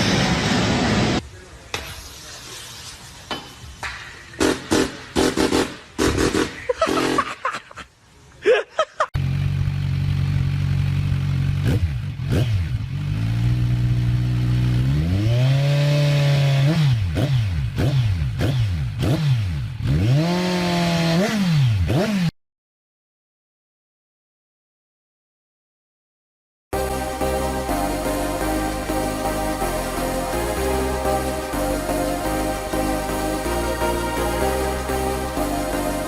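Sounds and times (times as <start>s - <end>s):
engine revving: 9.2s - 22.3s.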